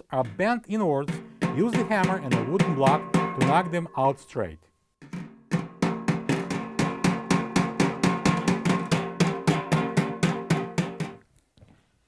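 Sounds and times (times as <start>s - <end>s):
hammer blows on wooden block: 1.1s - 4.1s
metal basket ringing: 1.1s - 4.4s, 5.0s - 11.2s.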